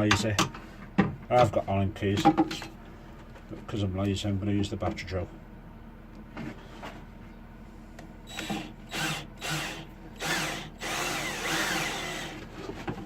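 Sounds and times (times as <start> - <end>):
cordless drill driving insert into wood: 8.3 - 12.5.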